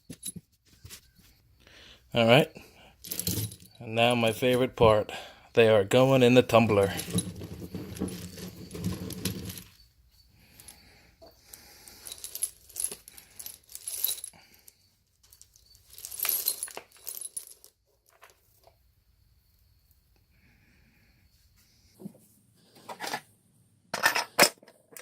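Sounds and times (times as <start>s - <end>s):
metal nuts and bolts clattering: 3.0s - 3.8s, 6.4s - 9.8s, 10.6s - 14.5s, 15.3s - 18.4s.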